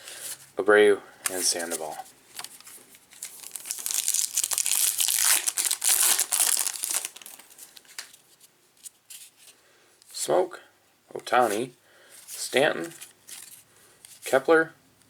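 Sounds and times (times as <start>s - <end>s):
wrapper tearing and crumpling: 3.2s - 8.1s.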